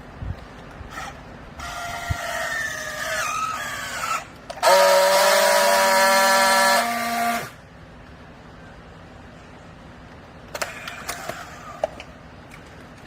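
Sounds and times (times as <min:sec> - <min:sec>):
hydraulic power unit whining: 0:00.0 - 0:07.8.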